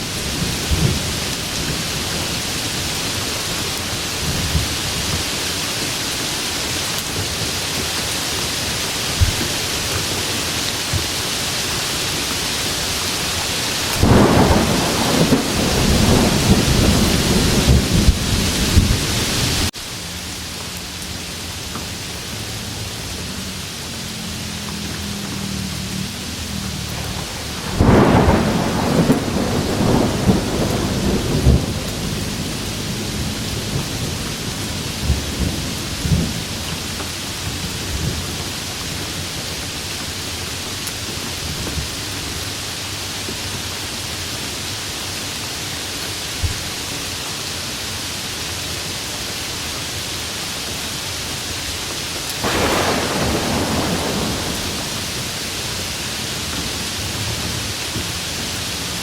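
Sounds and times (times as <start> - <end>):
thunder clap and rumble: 0.0 - 5.3, 13.3 - 19.7, 25.1 - 39.5, 52.4 - 57.6
steady rain: 0.0 - 59.0.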